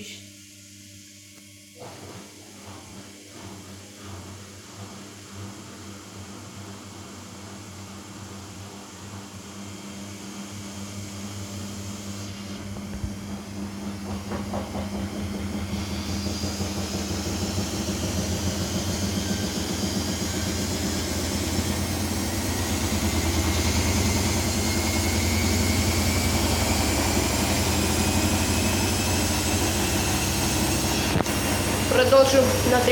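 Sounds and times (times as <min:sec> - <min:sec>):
washing machine spinning: 0:01.6 - 0:32.9
high motor whine: 0:10.8 - 0:32.9
knock: 0:14.1 - 0:15.1.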